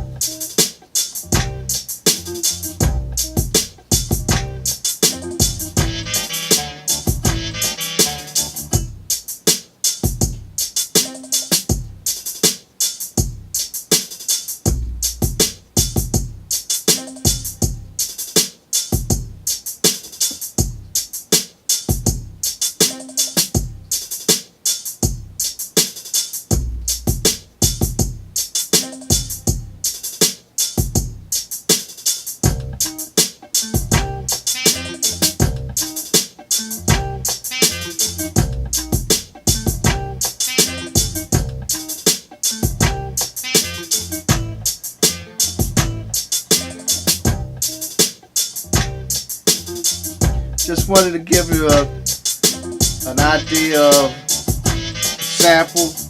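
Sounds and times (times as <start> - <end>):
deep drum machine kicks: 0.0 - 0.3, 1.2 - 6.2, 7.1 - 7.7, 8.7 - 9.1, 10.1 - 10.6, 11.7 - 12.1, 13.2 - 13.6, 14.7 - 16.5, 17.3 - 18.0, 19.0 - 19.5, 20.4 - 21.0, 21.9 - 22.4, 23.6 - 23.9, 25.0 - 25.4, 26.5 - 28.4, 29.1 - 29.8, 32.4 - 32.9, 33.8 - 34.4, 35.3 - 35.8, 36.8 - 37.3, 38.4 - 40.3, 41.0 - 41.8, 42.6 - 43.2, 44.3 - 44.8, 45.5 - 46.2, 47.1 - 47.7, 48.7 - 49.2, 50.2 - 52.1, 52.8 - 53.5, 54.5 - 55.0
quick steady hi-hats: 0.0 - 56.0.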